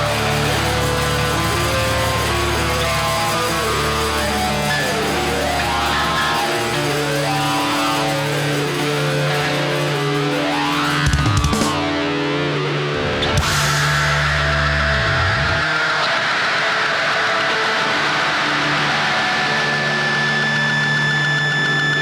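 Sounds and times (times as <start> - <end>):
loud drum hits: 0.0 - 12.0
distorted electric guitars: 0.0 - 22.0
heavy rock band playing live: 0.0 - 22.0.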